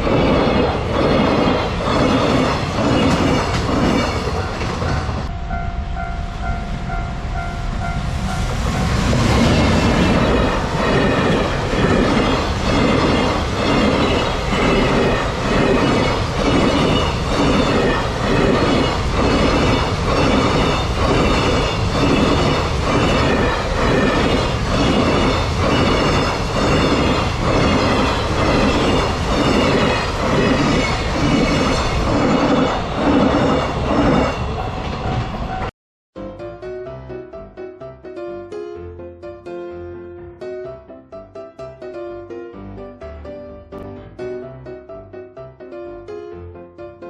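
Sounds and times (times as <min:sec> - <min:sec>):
train wheels clattering over rail joints: 0:00.0 - 0:05.3.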